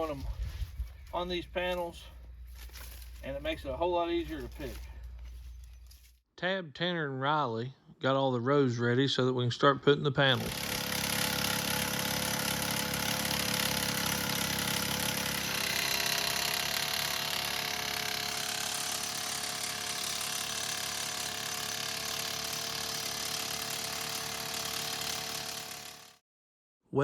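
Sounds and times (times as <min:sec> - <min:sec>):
engine running: 0:10.5 - 0:26.1.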